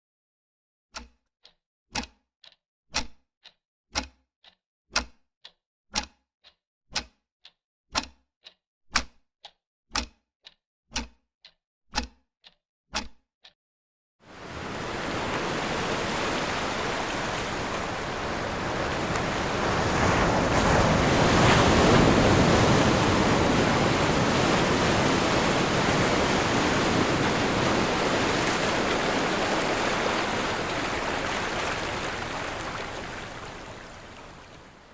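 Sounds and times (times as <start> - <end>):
regular ticking: 1.0 - 13.6
ocean surf on shore: 14.3 - 34.9.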